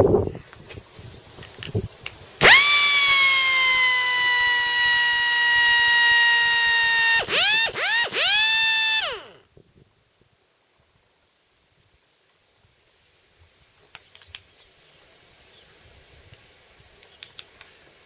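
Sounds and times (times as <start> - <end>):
air hammer whining: 2.4 - 9.4.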